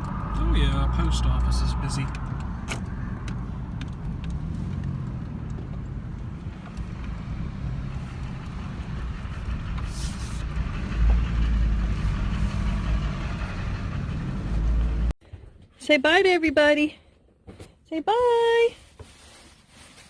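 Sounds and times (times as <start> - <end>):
low engine surge: 0.0 - 15.2
vehicle engine and road noise: 0.0 - 15.2.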